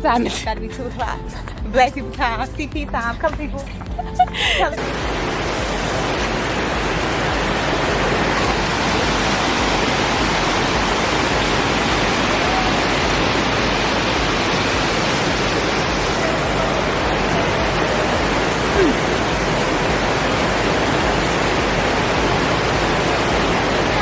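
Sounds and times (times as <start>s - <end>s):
water rushing: 0.0s - 24.0s.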